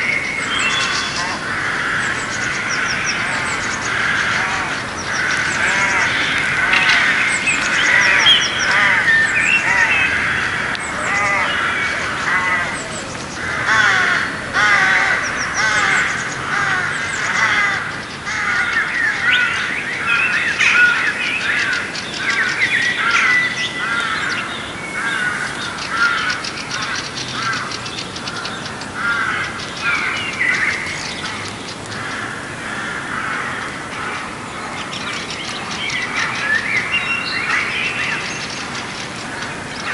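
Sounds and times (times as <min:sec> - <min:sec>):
chorus of birds chirping: 0:00.0 - 0:39.9.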